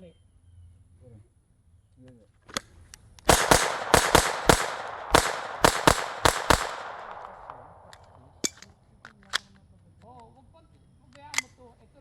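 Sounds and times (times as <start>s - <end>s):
faint sharp cracks: 2.5s - 9.4s
pistol shots: 3.3s - 8.6s.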